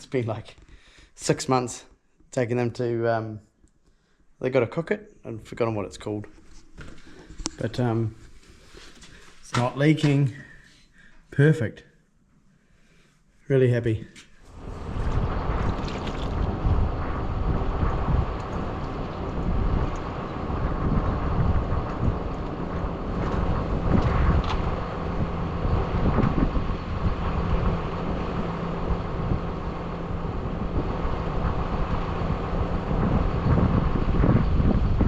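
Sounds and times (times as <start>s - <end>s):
farm vehicle engine running: 14.5s - 35.0s
wind buffeting microphone: 14.5s - 35.0s.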